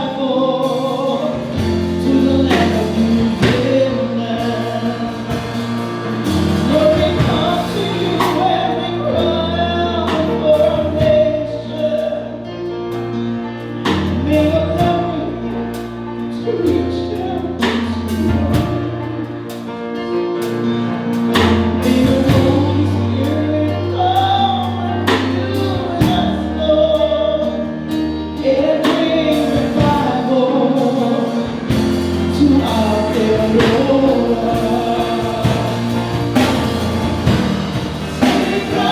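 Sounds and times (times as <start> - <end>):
choir singing a hymn: 0.0 - 12.4, 20.8 - 38.9
sustained bass notes: 0.0 - 38.9.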